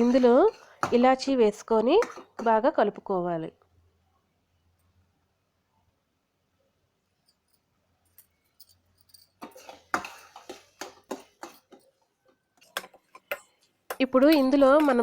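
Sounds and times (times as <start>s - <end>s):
spoon scraping and knocking a pan: 0.0s - 2.8s, 9.4s - 15.0s.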